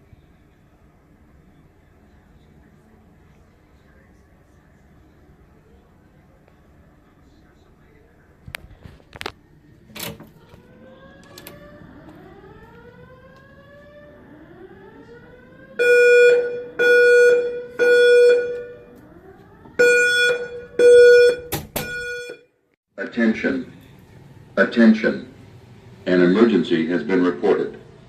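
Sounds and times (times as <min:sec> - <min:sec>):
fire alarm horn blasts: 0:10.4 - 0:22.6.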